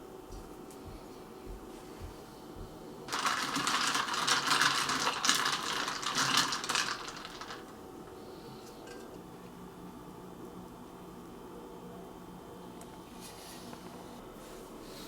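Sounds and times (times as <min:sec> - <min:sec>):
ice cubes rattling and clinking: 0:03.1 - 0:07.7.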